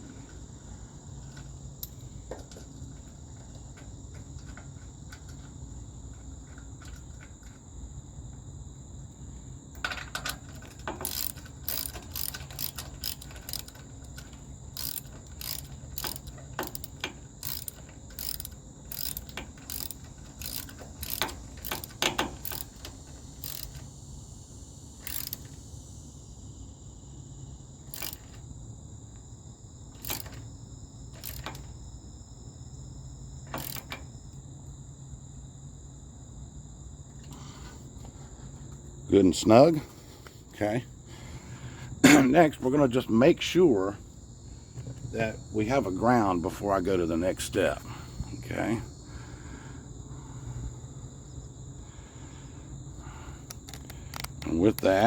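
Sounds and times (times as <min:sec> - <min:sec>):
ratchet wrench clicking: 0:01.8 - 0:02.1, 0:10.2 - 0:23.9, 0:25.0 - 0:25.6, 0:27.9 - 0:28.4, 0:30.0 - 0:30.4, 0:31.2 - 0:31.7, 0:33.5 - 0:34.0, 0:53.5 - 0:55.0.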